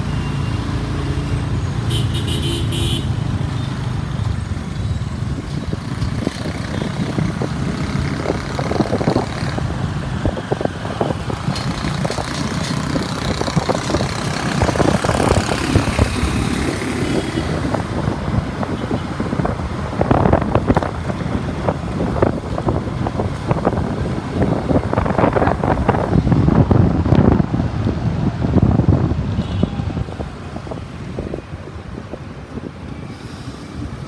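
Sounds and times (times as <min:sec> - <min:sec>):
motorbike engines passing: 0:00.0 - 0:34.0.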